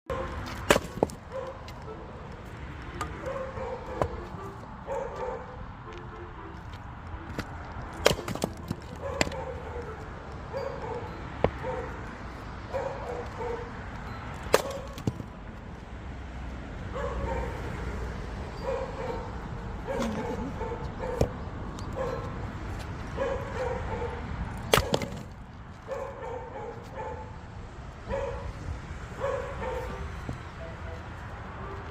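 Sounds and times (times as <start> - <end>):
axe splitting firewood: 0.3 - 1.8, 7.3 - 9.4, 14.4 - 15.3, 24.5 - 25.4
dog yipping and barking: 1.3 - 2.1, 3.2 - 5.6, 8.9 - 12.0, 12.7 - 13.7, 16.9 - 22.4, 23.2 - 25.0, 25.9 - 27.3, 28.1 - 28.6, 29.2 - 30.2.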